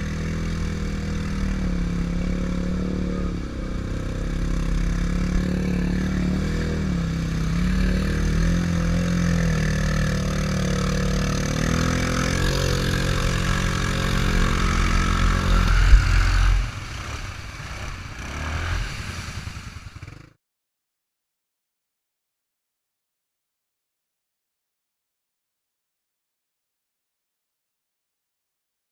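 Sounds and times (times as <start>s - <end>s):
off-road vehicle engine under load: 0.0s - 20.4s.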